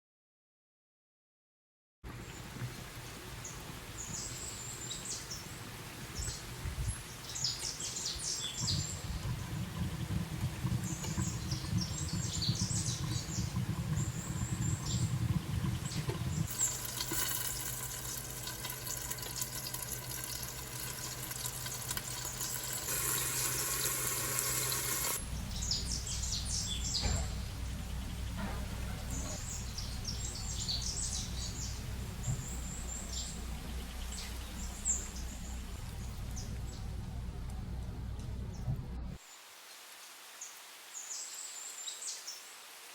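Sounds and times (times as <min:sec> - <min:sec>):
small birds chirping: 0:03.4 - 0:38.8
steady hiss: 0:22.3 - 0:27.0.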